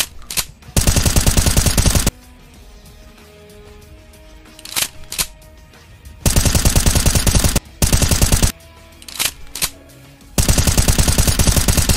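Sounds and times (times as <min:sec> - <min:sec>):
faint background music: 0:00.0 - 0:11.9
machine gun fire sound effect: 0:00.8 - 0:02.1, 0:06.2 - 0:08.5, 0:10.4 - 0:11.9.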